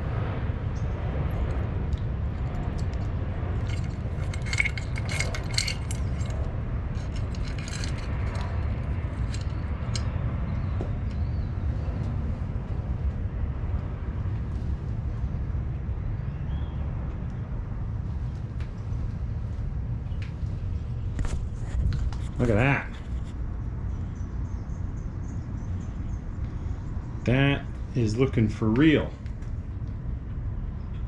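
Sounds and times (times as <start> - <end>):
steady low rumble: 0.0 - 31.0
metallic clinks of hand tools: 3.6 - 6.4, 7.0 - 10.0.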